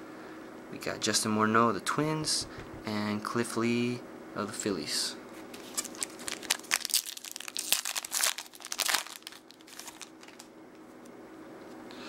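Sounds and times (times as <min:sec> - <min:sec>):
foil wrapper crinkling and tearing: 0:05.6 - 0:10.5.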